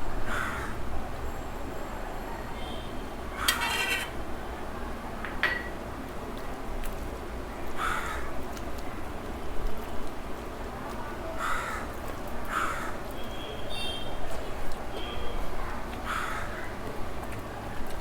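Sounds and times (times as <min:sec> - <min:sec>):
dishes clinking: 0:03.4 - 0:04.2, 0:05.2 - 0:05.8
crow cawing: 0:11.4 - 0:11.8.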